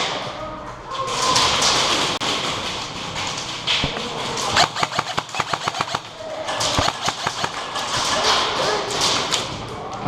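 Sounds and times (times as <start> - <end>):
airsoft gunfire: 3.8 - 8.2.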